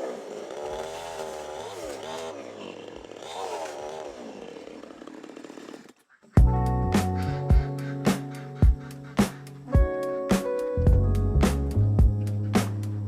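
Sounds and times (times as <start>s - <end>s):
small engine revving: 0.0s - 6.1s.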